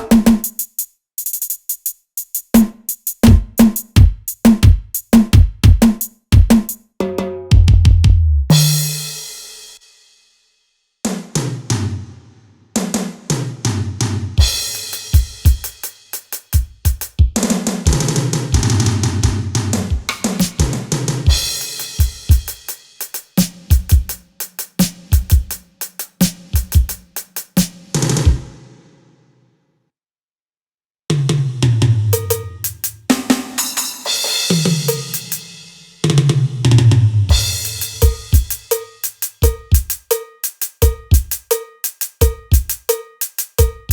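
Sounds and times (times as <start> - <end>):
snare hits: 0.0 - 0.6, 20.1 - 21.0, 23.1 - 23.8, 24.6 - 28.8
bass drum thumps: 3.3 - 6.6, 7.5 - 8.6, 16.9 - 18.0
cymbal: 8.5 - 10.4, 14.4 - 16.7, 20.1 - 27.8, 32.2 - 36.0, 37.3 - 43.9.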